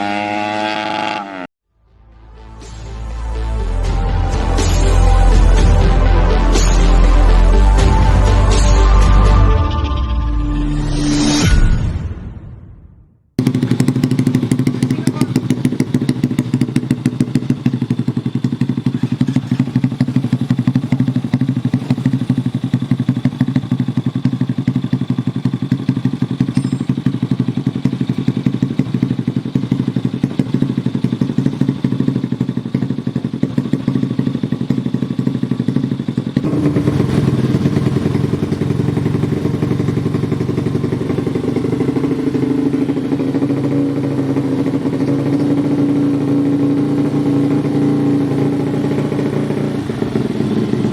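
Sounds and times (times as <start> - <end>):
motorcycle engine running: 0.0 - 1.5, 13.4 - 50.9.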